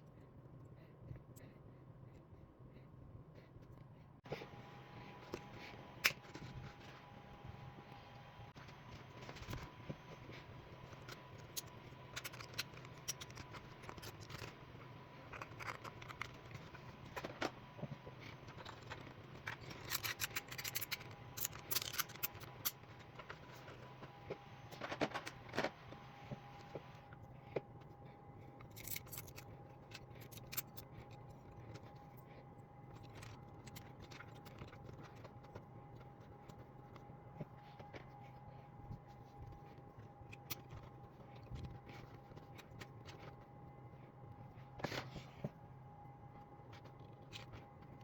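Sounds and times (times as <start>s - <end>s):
faint steady hum: 0.0s - 48.0s
hard objects clicking and scraping: 10.8s - 25.8s.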